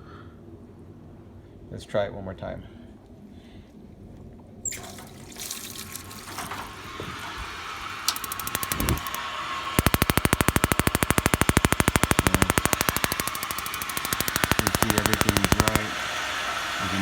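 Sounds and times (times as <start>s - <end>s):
igniter clicking rapidly: 8.0s - 9.2s, 9.8s - 16.4s
rush of gas noise: 8.1s - 17.0s.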